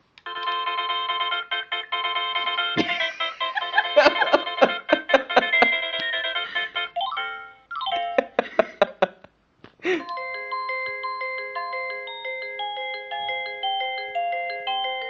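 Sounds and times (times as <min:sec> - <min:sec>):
musical doorbell chime: 0:00.3 - 0:08.6, 0:09.9 - 0:15.0.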